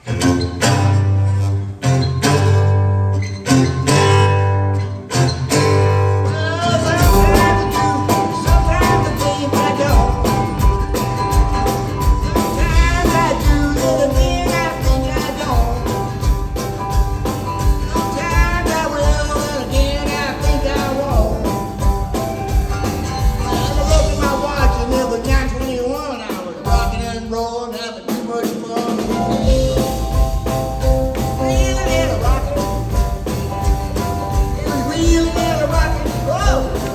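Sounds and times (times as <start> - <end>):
lead guitar bending notes: 0.0 - 25.6
rock band playing: 0.0 - 36.9.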